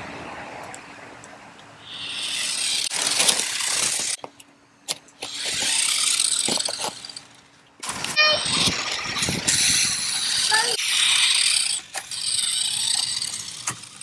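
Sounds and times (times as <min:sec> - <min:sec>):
toy car electric motor whirring: 0:01.9 - 0:04.2, 0:05.2 - 0:14.0.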